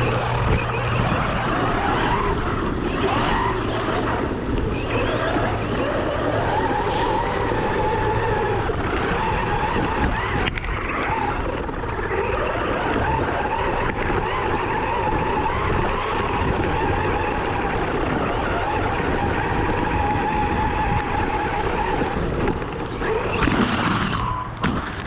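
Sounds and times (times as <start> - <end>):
rc car electric motor whining: 0.0 - 24.6
steady rough noise: 0.0 - 25.0.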